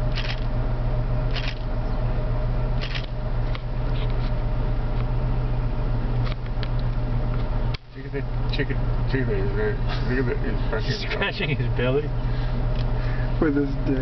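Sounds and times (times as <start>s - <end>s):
vehicle engine idling: 0.0s - 14.0s
rustles and clicks of handling: 2.9s - 5.1s.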